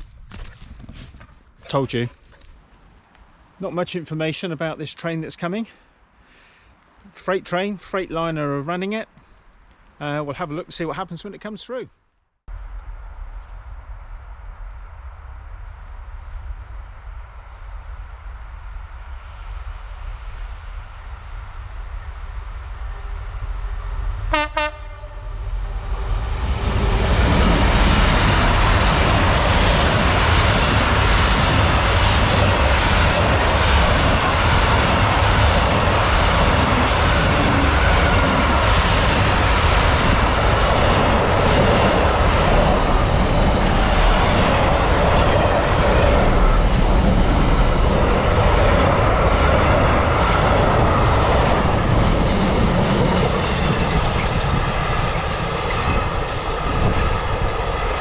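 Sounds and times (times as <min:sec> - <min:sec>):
freight train wagons rumbling: 0:21.8 - 0:57.8.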